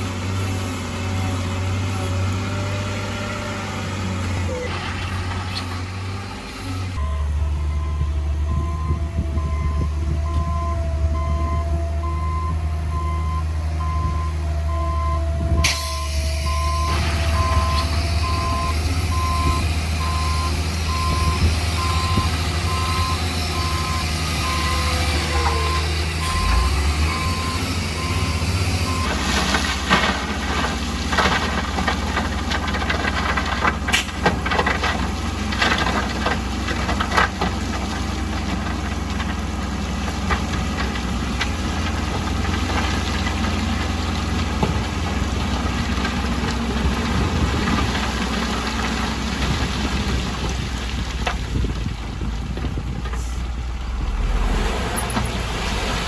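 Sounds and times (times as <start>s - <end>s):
diesel engine drone: 0.0s - 56.0s
reversing alarm beeping: 7.0s - 29.2s.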